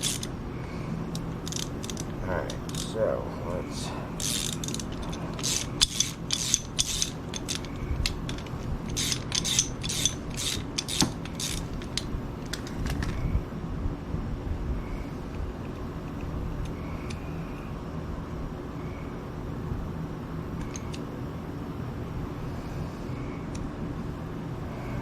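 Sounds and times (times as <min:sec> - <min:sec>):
hand ratchet clicking: 0:00.0 - 0:00.4, 0:01.1 - 0:03.0, 0:04.2 - 0:13.2.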